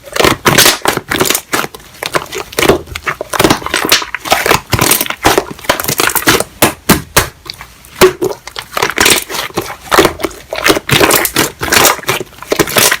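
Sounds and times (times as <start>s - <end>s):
slime wet crackling and popping: 0.0s - 13.0s.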